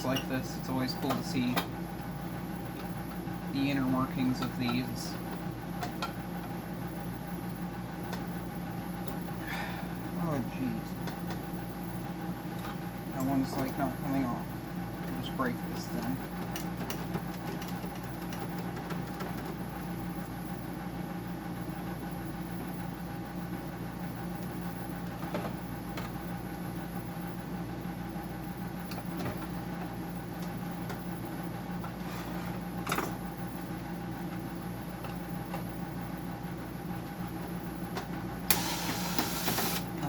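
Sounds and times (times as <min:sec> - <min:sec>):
machine humming: 0:26.7 - 0:40.0.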